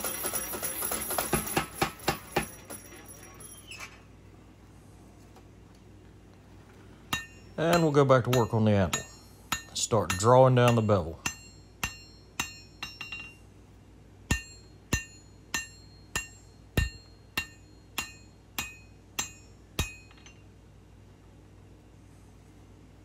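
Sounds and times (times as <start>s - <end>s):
hammer ringing on hot steel: 0.1s - 3.5s, 7.1s - 13.5s, 14.2s - 20.5s.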